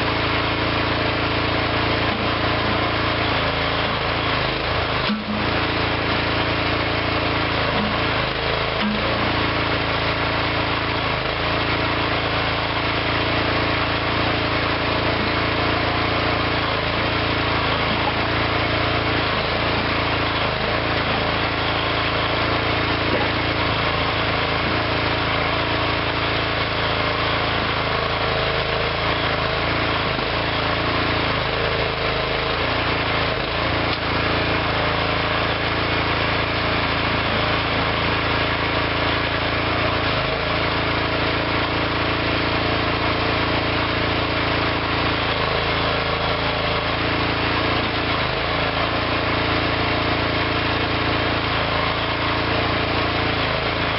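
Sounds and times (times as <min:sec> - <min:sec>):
backhoe engine running: 0:00.0 - 0:53.9.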